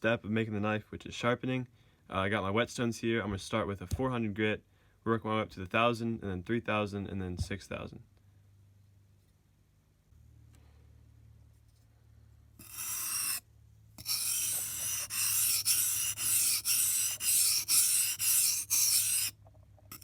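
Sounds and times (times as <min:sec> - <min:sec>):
knife scraping on whetstone: 0:12.6 - 0:13.4, 0:14.0 - 0:19.3.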